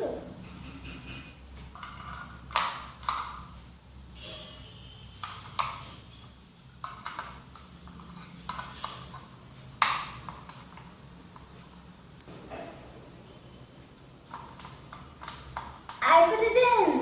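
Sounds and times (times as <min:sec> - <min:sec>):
plastic parts clicking and knocking: 0:00.5 - 0:03.5, 0:05.2 - 0:05.9, 0:06.8 - 0:11.5, 0:14.3 - 0:16.0.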